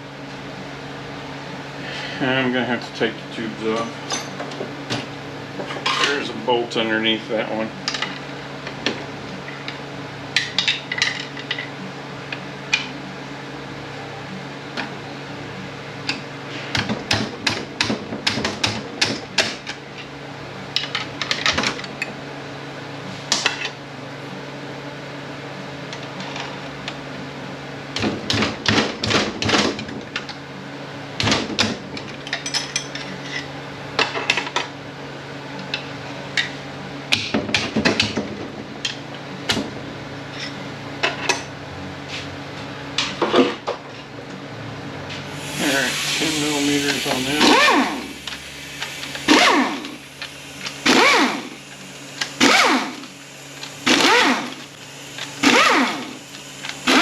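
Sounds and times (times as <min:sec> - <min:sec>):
low hum: 0:45.3 - 0:57.0.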